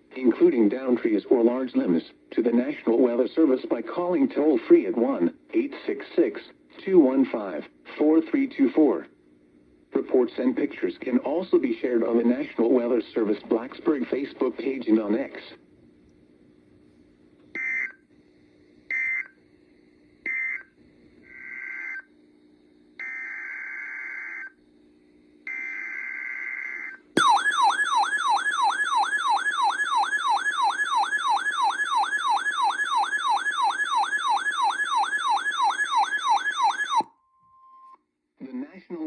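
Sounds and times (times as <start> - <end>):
warbling alert tone: 27.2 - 37.0.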